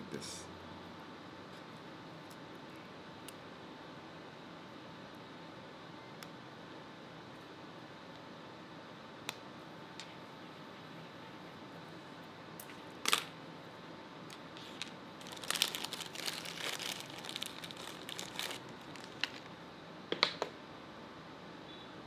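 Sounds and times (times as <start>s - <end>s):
plastic cable crinkling: 12.6s - 13.3s, 14.3s - 19.5s.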